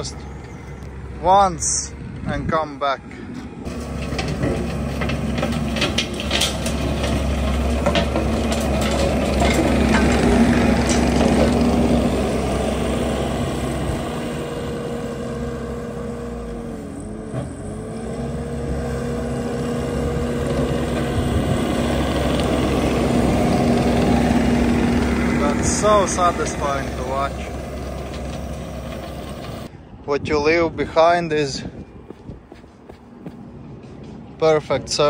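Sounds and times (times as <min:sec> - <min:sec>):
diesel engine droning: 0:00.0 - 0:30.0
clicks and rattles: 0:04.0 - 0:11.6.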